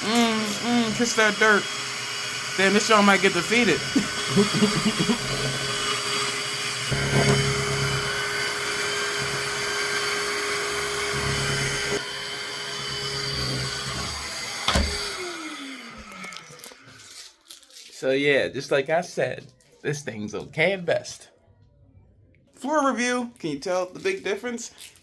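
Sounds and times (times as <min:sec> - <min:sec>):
vacuum mop motor humming: 0:00.0 - 0:17.0.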